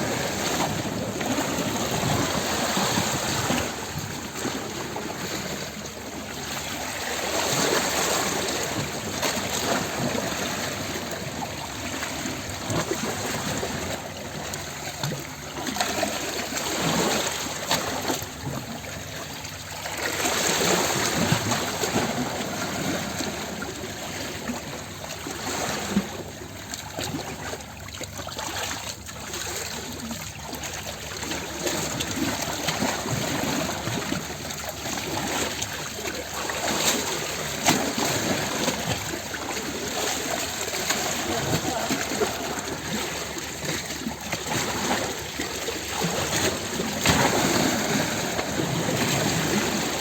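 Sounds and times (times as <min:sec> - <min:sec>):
stream babbling: 0:00.0 - 0:50.0
water splashes: 0:00.0 - 0:50.0.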